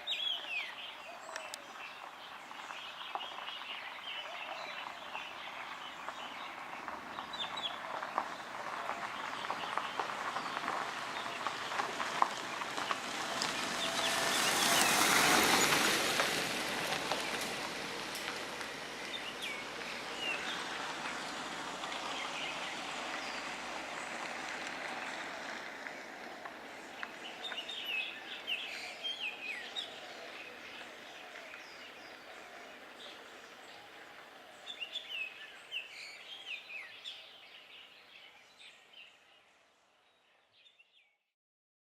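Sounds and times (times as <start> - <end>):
broad rush of noise: 0.0 - 35.9
birds chirping: 26.7 - 39.4.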